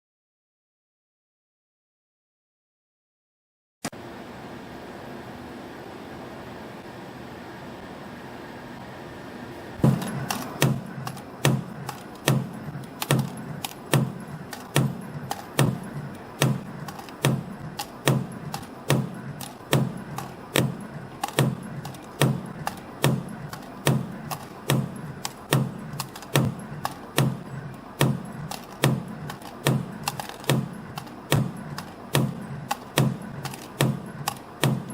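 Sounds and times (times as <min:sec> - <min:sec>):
sharp machine strike: 0:09.8 - 0:34.9
wire forming machine clatter: 0:09.8 - 0:34.9.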